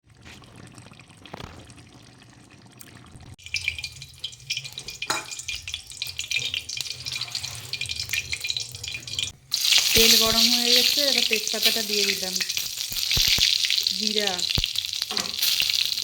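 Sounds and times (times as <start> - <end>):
oil sizzling in a pan: 3.4 - 16.0.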